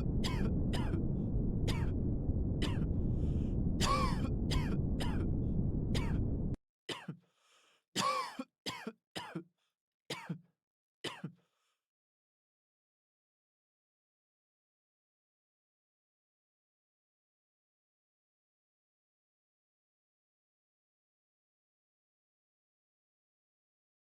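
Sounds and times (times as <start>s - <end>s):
steady low rumble: 0.0s - 6.6s
person coughing: 3.8s - 5.2s, 6.9s - 7.2s, 8.0s - 9.5s, 10.1s - 10.4s, 11.1s - 11.4s.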